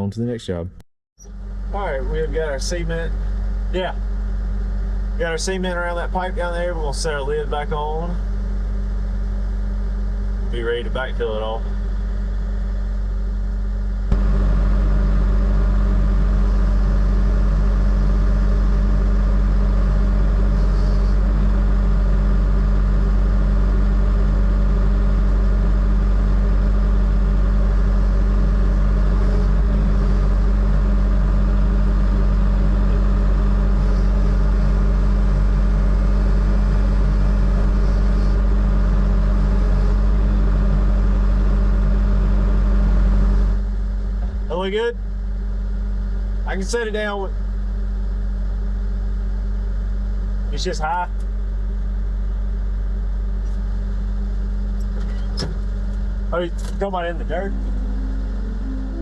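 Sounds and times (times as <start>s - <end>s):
digging machine engine running: 14.1s - 41.0s, 54.7s - 59.0s.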